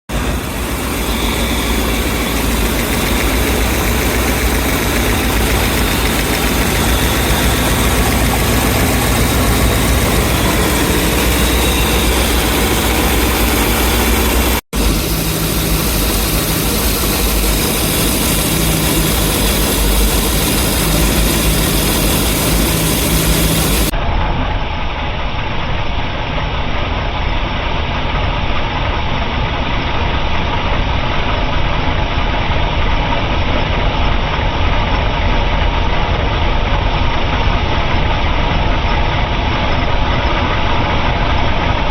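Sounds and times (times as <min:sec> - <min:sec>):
boat engine idling: 0:00.1 - 0:23.9.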